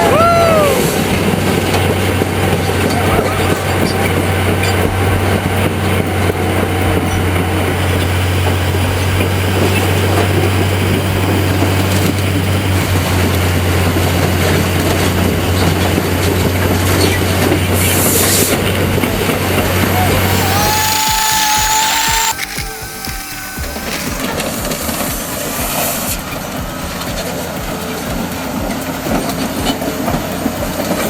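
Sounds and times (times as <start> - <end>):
bulldozer diesel engine droning: 0.0 - 31.0.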